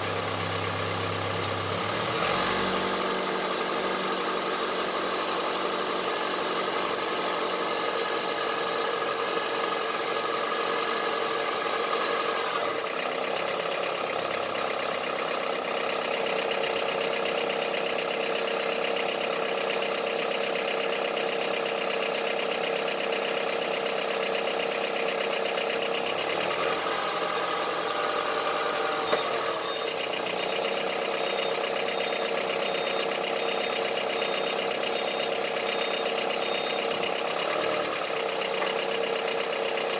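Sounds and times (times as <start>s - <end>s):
car engine idling with knocking: 0.0s - 39.9s.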